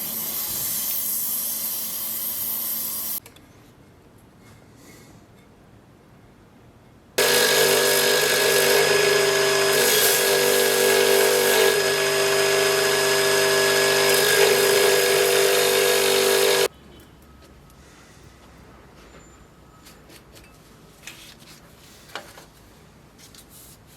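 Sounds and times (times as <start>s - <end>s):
power tool whining and grinding: 7.2s - 16.7s.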